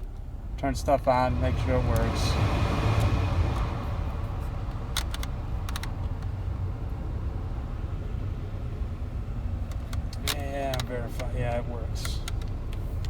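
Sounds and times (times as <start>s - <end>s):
vehicle running hum: 0.0s - 13.0s
control buttons clicking: 4.9s - 6.3s, 9.6s - 12.8s.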